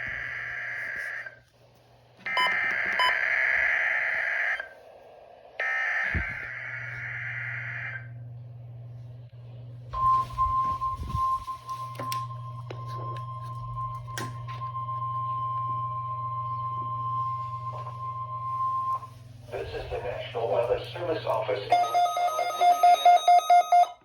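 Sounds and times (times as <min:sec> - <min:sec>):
steady alarm tone: 0:00.0 - 0:01.4, 0:02.2 - 0:04.8, 0:05.6 - 0:08.2, 0:09.9 - 0:24.0
crackling static: 0:00.0 - 0:09.4, 0:18.4 - 0:21.7
low hum: 0:00.0 - 0:21.7.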